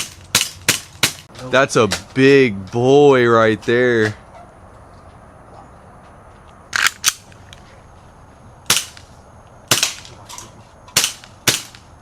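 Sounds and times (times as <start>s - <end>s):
bb gun shots: 8.7s - 9.0s, 9.7s - 10.1s, 10.9s - 11.9s.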